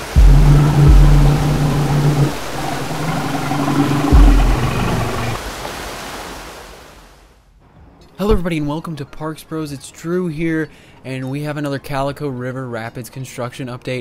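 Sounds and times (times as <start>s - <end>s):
deep booming hits: 0.0s - 5.4s
low droning tone: 0.0s - 5.4s
rushing whoosh: 0.0s - 5.7s.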